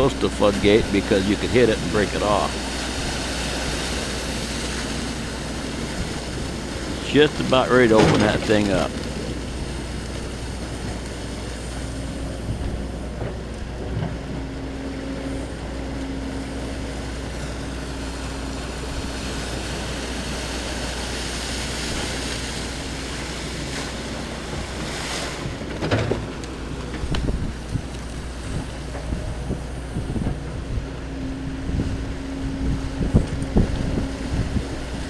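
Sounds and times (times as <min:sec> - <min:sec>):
excavator diesel engine drone: 0:00.0 - 0:35.0
surf: 0:00.0 - 0:35.0
wind: 0:00.0 - 0:35.0.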